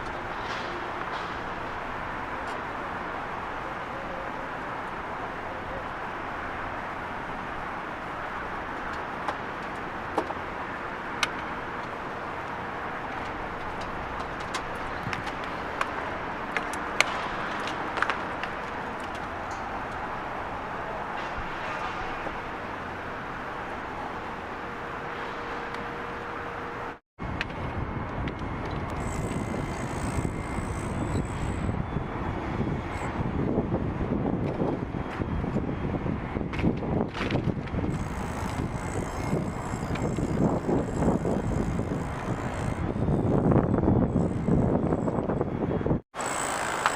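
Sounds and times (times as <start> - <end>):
city noise: 0.0 - 46.9
machinery hum: 28.5 - 33.1.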